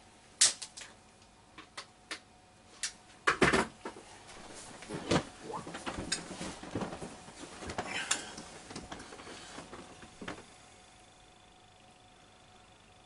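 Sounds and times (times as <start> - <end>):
clicks and knocks of handling: 4.8 - 10.5.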